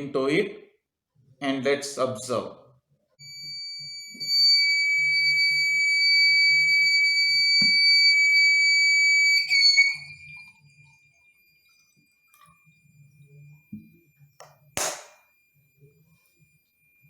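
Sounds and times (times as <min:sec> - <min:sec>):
high-pitched buzzer tone: 0:03.2 - 0:10.5
knock: 0:07.6 - 0:07.8.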